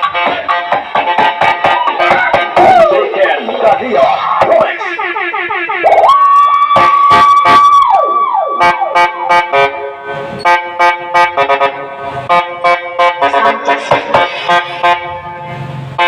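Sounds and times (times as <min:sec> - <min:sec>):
drum beat: 0:00.0 - 0:07.9, 0:13.4 - 0:14.4
siren effect high tone: 0:04.0 - 0:09.6
sustained synth chords: 0:04.2 - 0:16.0.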